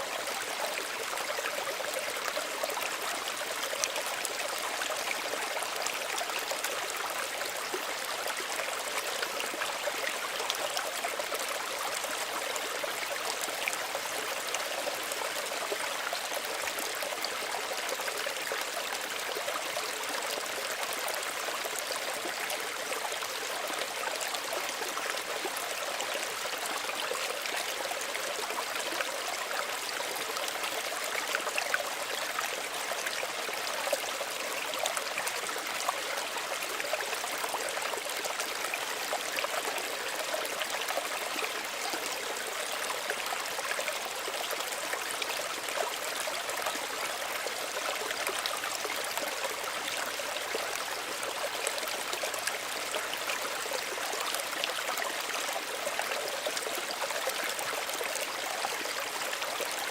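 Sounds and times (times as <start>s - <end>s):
stream trickling and babbling: 0.0s - 59.9s.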